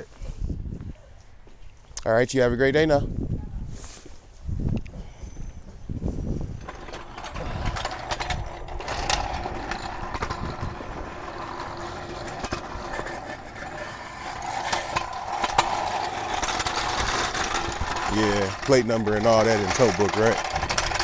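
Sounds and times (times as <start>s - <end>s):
clicks and rattles: 6.6s - 21.0s.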